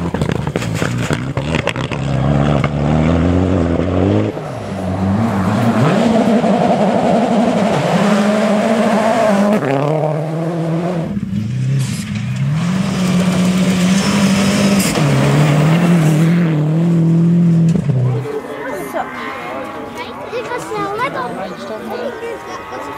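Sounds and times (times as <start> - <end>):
rally car engine revving: 0.0 - 22.9.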